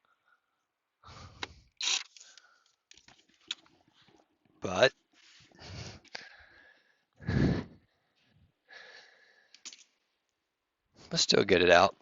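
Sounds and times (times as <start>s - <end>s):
man sighing: 7.2s - 7.8s.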